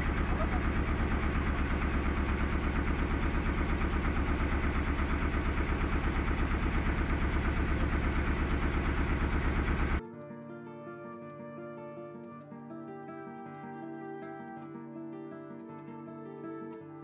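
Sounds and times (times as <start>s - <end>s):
boat engine running: 0.0s - 10.0s.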